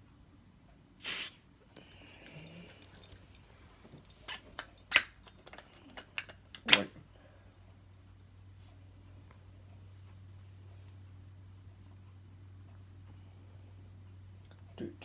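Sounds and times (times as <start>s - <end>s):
short bursts of hiss: 1.0s - 1.5s
light handling clicks and clinks: 1.8s - 6.7s.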